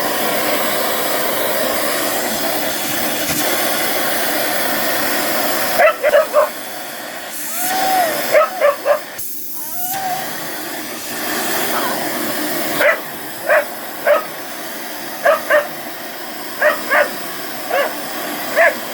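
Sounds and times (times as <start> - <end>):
vacuum cleaner running: 0.0 - 18.9
dog barking: 5.8 - 6.6, 8.2 - 9.2, 12.8 - 14.4, 15.2 - 15.8, 16.6 - 18.9.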